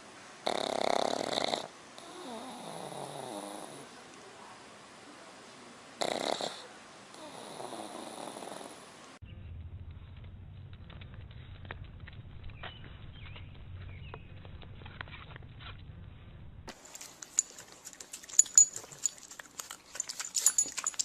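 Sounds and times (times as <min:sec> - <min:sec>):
dog snoring: 0:00.4 - 0:03.9, 0:06.0 - 0:08.9.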